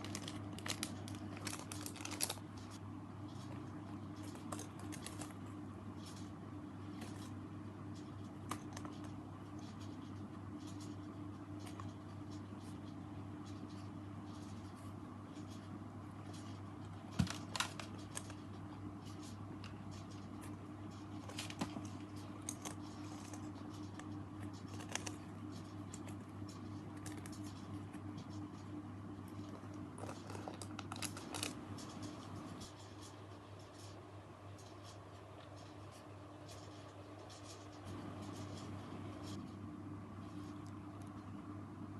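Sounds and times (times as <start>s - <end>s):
foam toys rustling and tapping: 0.0s - 2.8s
low electrical hum: 0.0s - 41.9s.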